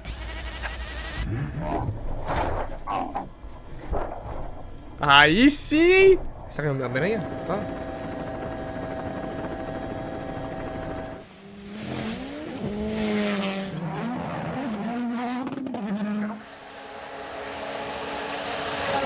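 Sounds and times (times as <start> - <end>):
steady engine hum: 4.7 - 13.7, 16.2 - 19.0
rally car engine revving: 7.4 - 19.0.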